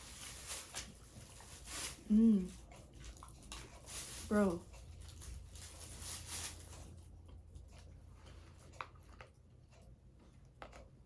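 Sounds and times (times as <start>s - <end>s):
snack crunching: 2.6s - 3.9s, 6.8s - 11.0s.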